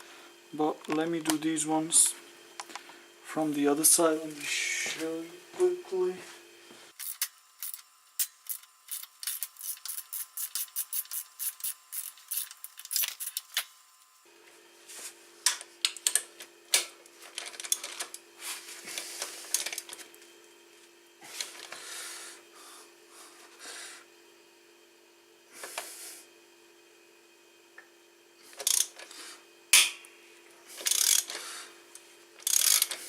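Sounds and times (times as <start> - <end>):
ratchet quick clicks: 7.0 - 13.6, 28.6 - 28.9, 30.8 - 31.4, 32.4 - 33.0.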